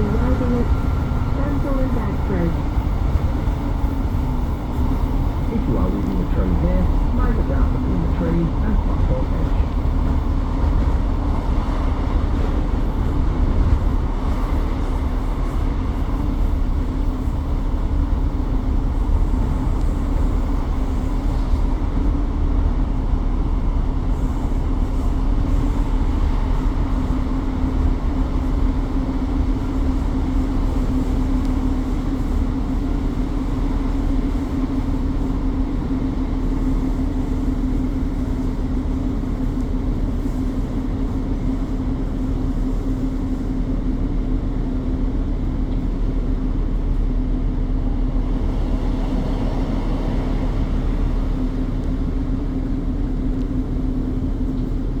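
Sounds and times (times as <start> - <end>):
diesel train engine rumbling: 0.0 - 55.0.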